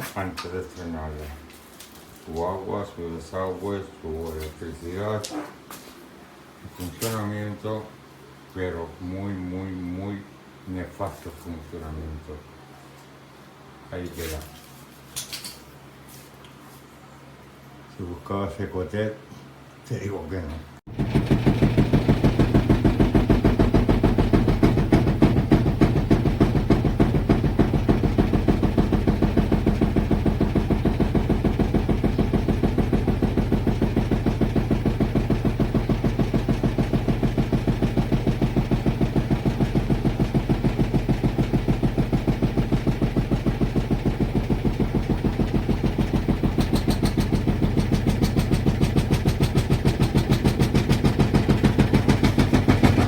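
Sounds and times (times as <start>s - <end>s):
washing machine running: 20.9s - 53.0s.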